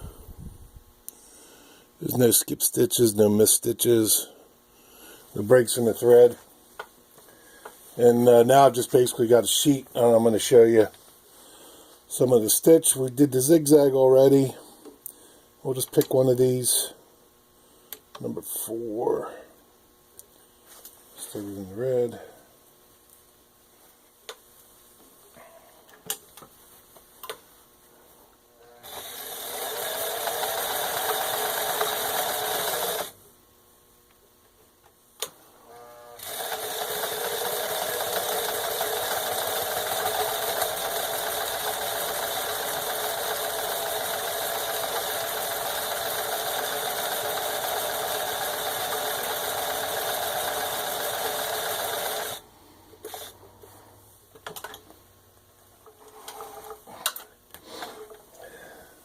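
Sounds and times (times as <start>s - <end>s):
sewing machine stitching: 28.8s - 33.2s, 36.2s - 52.4s.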